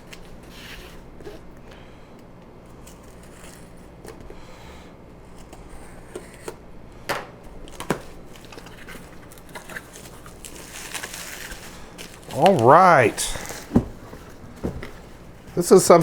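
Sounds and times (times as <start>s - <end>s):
packaging rustling and scraping: 2.7s - 4.2s, 7.6s - 16.0s.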